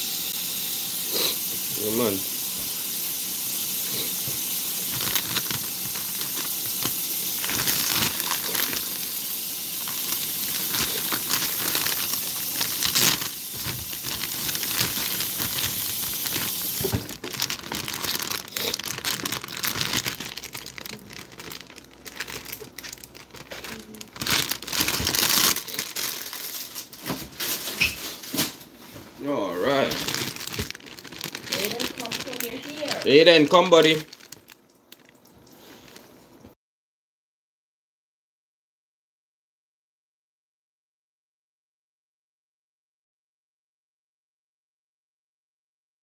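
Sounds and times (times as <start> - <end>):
steady crackling hiss: 0.0 - 16.8, 29.2 - 35.1
crinkling and rustling: 4.0 - 36.2.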